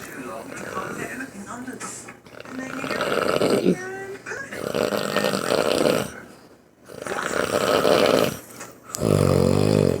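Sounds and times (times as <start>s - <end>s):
man snoring: 2.7s - 3.8s, 4.6s - 6.2s, 6.9s - 10.0s.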